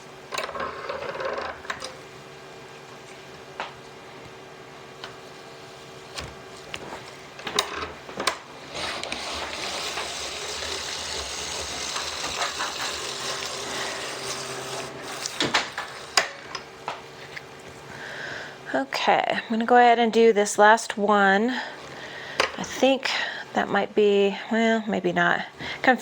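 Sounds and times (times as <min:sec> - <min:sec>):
apple corer grinding: 0:07.7 - 0:17.5.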